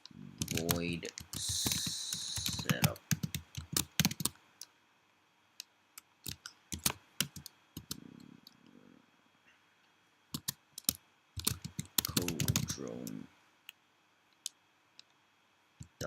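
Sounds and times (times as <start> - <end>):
keyboard keys clicking: 0.4 - 4.3, 6.2 - 8.0, 10.4 - 12.7.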